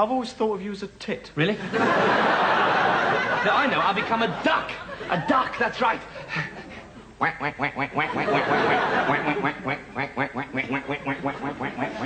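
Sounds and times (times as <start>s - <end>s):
man imitating duck quacks: 7.2s - 12.0s.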